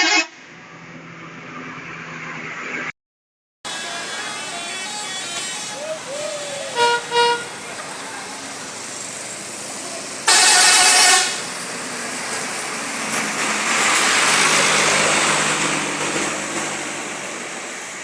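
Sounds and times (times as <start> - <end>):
coach air horn blast: 3.7 - 9.0, 9.9 - 11.6
bus driving past: 3.7 - 18.0.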